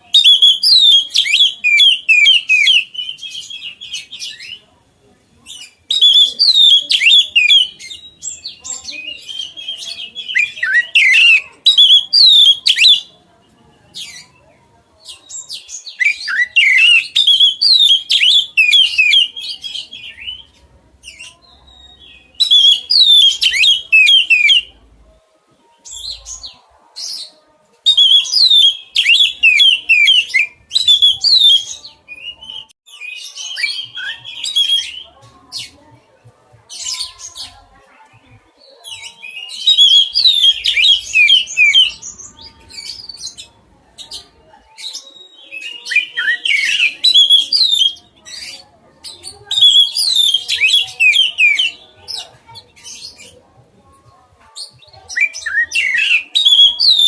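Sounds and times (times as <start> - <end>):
bird singing whistled notes: 0.1 - 4.6, 5.5 - 13.1, 15.3 - 24.7, 27.9 - 35.1, 38.9 - 43.5, 44.8 - 48.6, 49.2 - 51.8, 55.1 - 57.0.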